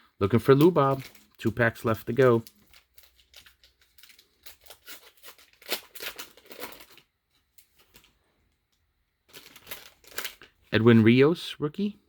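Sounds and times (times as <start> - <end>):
wrapper tearing and crinkling: 0.3 - 8.1, 9.3 - 10.6.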